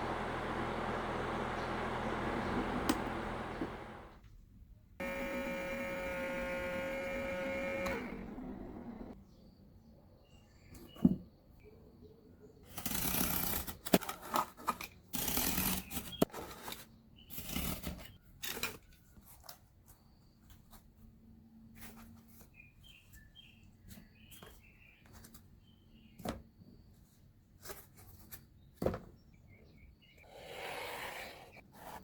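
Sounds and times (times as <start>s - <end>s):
cardboard rustling and scraping: 15.7s - 16.9s.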